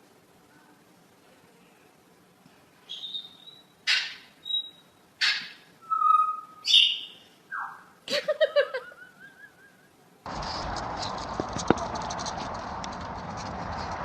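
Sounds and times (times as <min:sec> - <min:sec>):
bird whistling: 0:02.9 - 0:07.9
bird squawks: 0:02.9 - 0:08.0.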